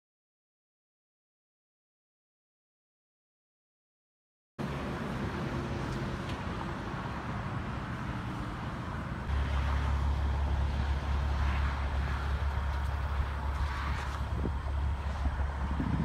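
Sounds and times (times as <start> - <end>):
road noise: 4.6 - 16.0
vehicle engine hum: 4.6 - 16.0.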